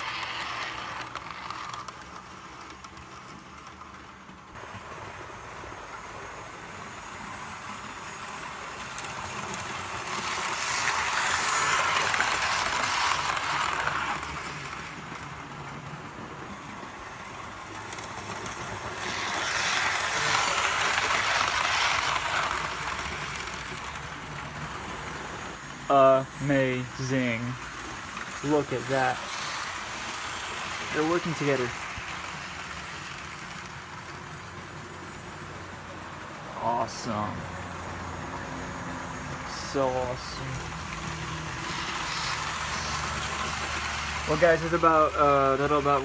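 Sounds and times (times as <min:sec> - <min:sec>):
model train motors whirring: 0:00.0 - 0:46.0
model train wheels rumbling: 0:00.0 - 0:46.0.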